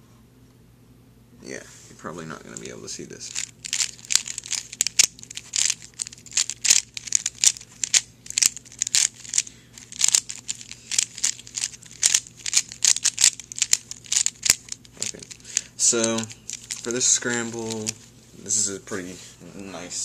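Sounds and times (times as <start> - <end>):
puzzle cube plastic clacking: 3.3 - 18.0.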